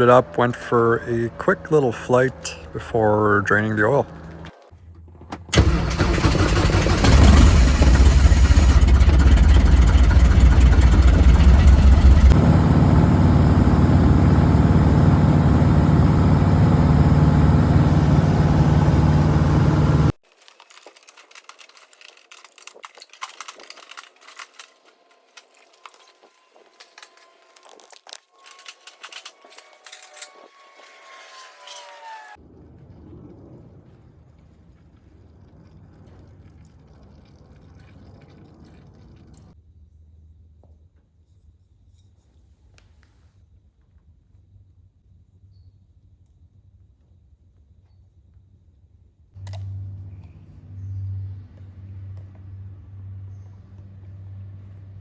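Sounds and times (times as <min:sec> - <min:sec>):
airplane piston engine running: 0:00.0 - 0:04.4, 0:05.5 - 0:20.1.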